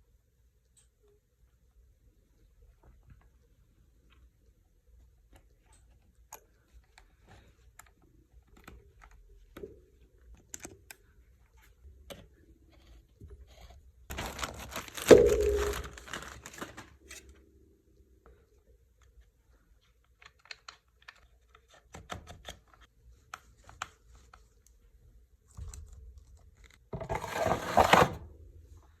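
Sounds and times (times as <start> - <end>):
rasping scraping noises: 27.0 - 28.2.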